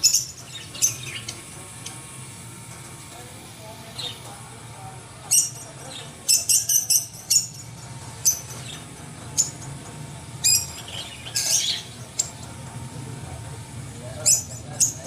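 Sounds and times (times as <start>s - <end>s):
small bird chirping: 0.0s - 2.1s, 5.2s - 9.7s, 10.4s - 12.5s, 14.0s - 15.0s
steady low hum: 0.0s - 15.0s.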